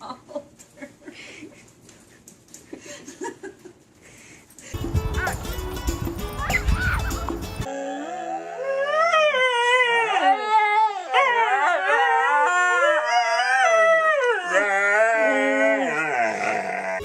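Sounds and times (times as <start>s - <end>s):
dog howling: 7.7s - 17.0s.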